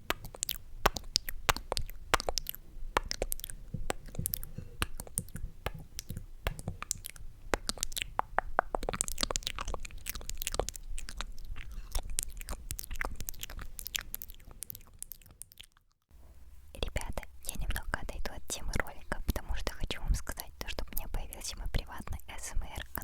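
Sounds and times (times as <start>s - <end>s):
wet lip and tongue clicks: 0.0s - 16.0s.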